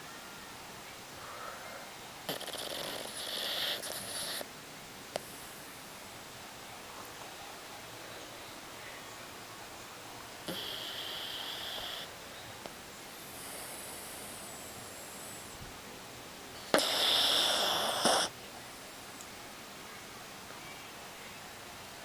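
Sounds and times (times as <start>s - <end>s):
dog snoring: 2.3s - 4.4s, 10.4s - 12.1s, 16.7s - 18.3s.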